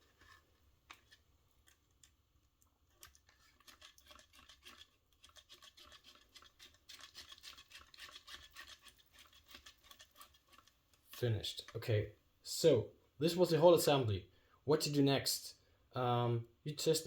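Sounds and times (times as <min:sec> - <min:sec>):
plastic scratching and ticking: 0:00.0 - 0:11.8.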